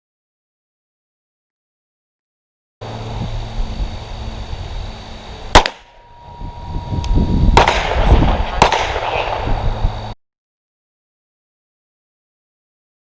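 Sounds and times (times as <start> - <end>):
pistol shot: 5.5 - 6.0, 7.5 - 9.6.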